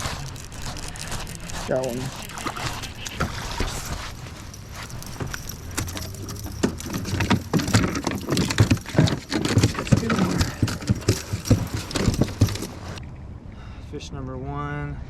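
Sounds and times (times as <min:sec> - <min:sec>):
fish knocking and slapping in kayak: 0:02.2 - 0:13.0.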